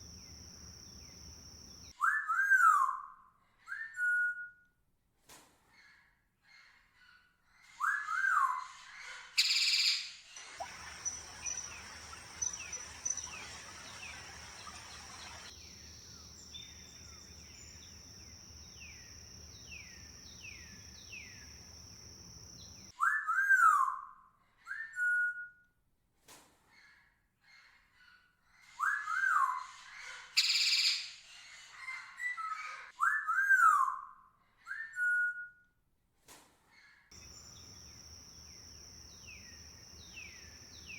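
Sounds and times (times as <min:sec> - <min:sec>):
tropical birds whistling: 0:09.4 - 0:22.9, 0:37.2 - 0:40.9.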